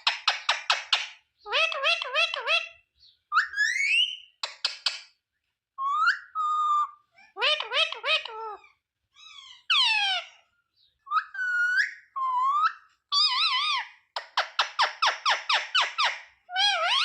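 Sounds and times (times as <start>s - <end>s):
parrot whistled calls: 3.3s - 4.3s, 5.8s - 7.0s, 11.1s - 13.8s.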